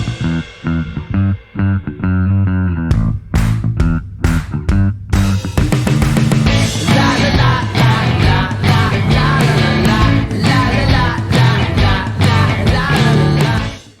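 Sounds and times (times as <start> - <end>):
rock music with drum beat: 0.0 - 2.0, 2.9 - 14.0.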